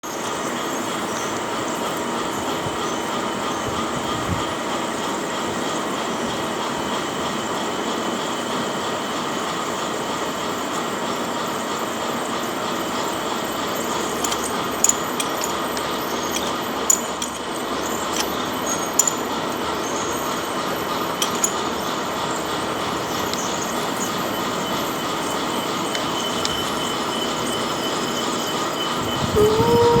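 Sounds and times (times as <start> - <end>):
machine drilling into metal: 13.6 - 28.6
short wavering tone: 23.5 - 30.0.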